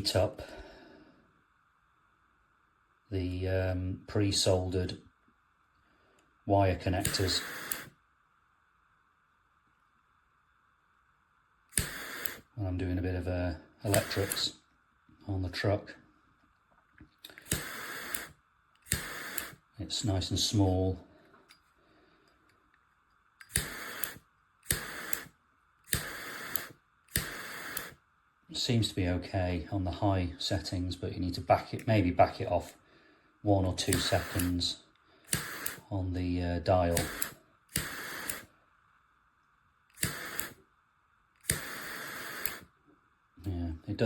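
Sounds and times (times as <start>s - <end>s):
torch flame hissing: 6.5s - 8.0s, 11.7s - 14.6s, 17.3s - 21.0s, 23.4s - 28.0s, 33.6s - 35.9s, 36.6s - 38.6s, 39.9s - 40.6s, 41.4s - 42.8s
lighter igniter click: 7.0s - 7.9s, 11.7s - 12.4s, 13.9s - 14.5s, 17.3s - 19.6s, 23.4s - 25.3s, 25.9s - 28.0s, 33.9s - 34.6s, 35.3s - 35.8s, 36.9s - 38.5s, 39.9s - 40.6s, 41.4s - 42.7s.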